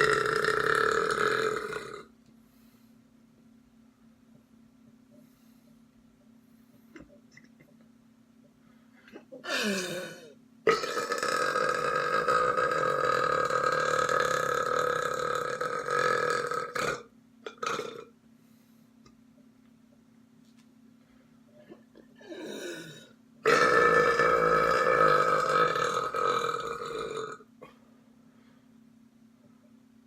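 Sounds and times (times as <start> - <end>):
person belching: 0.0 - 2.1, 9.2 - 18.1, 22.2 - 27.5.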